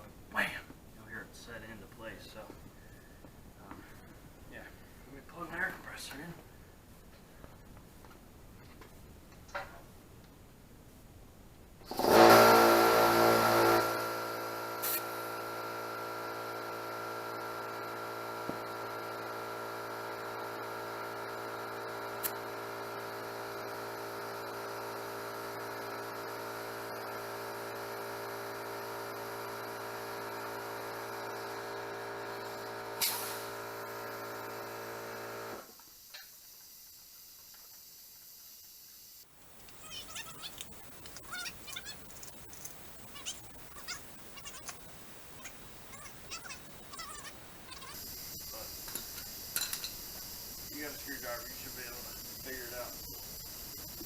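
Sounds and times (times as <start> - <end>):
air compressor running: 11.8 - 35.8, 39.3 - 54.0
short clicks: 39.6 - 48.0.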